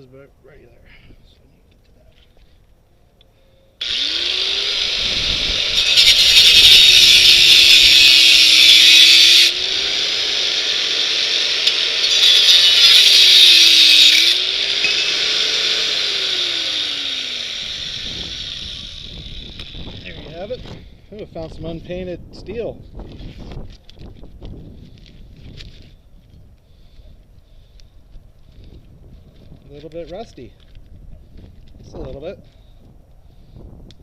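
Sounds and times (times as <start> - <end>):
angle grinder cutting steel: 3.8 - 20.6.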